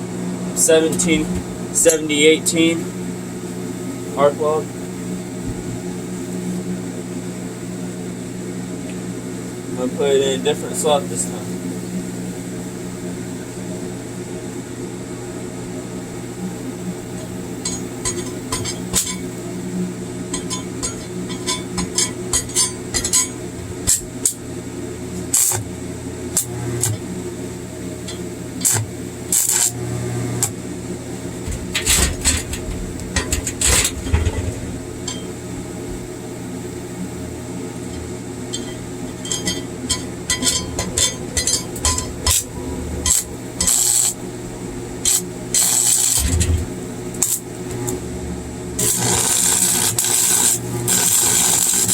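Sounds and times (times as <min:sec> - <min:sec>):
arc welder humming: 0:00.0 - 0:51.9
welding arc crackling and popping: 0:17.2 - 0:19.4, 0:20.3 - 0:24.4, 0:25.1 - 0:27.2, 0:28.0 - 0:30.6, 0:39.4 - 0:48.0, 0:48.8 - 0:51.9.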